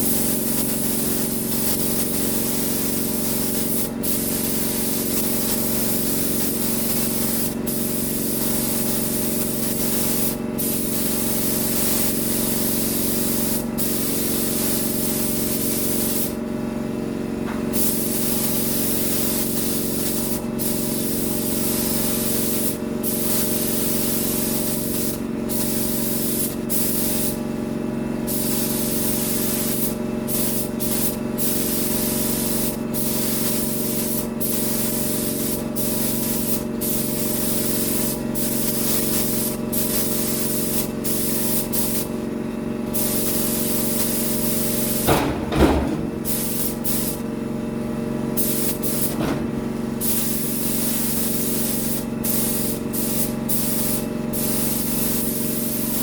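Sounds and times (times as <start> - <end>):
paint spray gun hissing: 0.0 - 16.4, 17.7 - 27.4, 28.2 - 47.3, 48.4 - 49.3, 49.9 - 56.0
steady machine hum: 0.0 - 56.0
brief knocks: 45.1 - 46.2.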